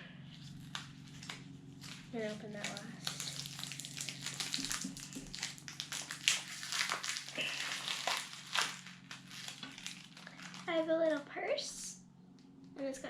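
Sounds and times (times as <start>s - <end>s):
plastic wrapper crinkling: 0.4s - 11.3s.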